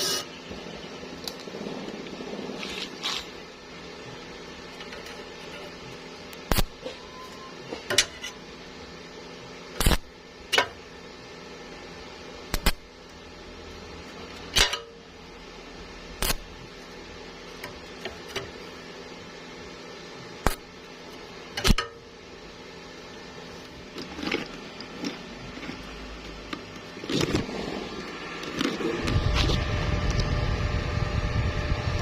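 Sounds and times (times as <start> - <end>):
low machine hum: 0.0 - 32.0.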